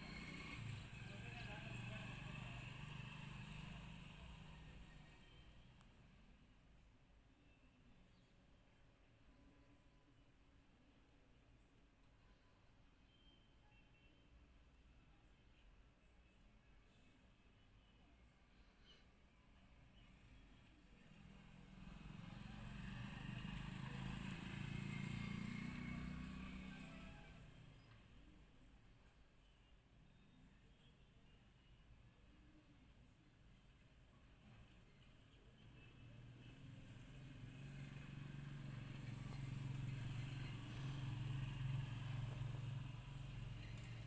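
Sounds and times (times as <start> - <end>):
vehicle passing by: 0.0 - 5.4, 21.1 - 27.8, 36.2 - 44.0.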